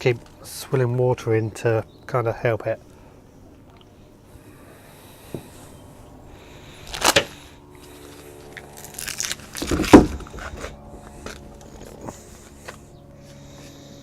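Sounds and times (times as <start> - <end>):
crackling rustling handling: 6.8 - 13.8.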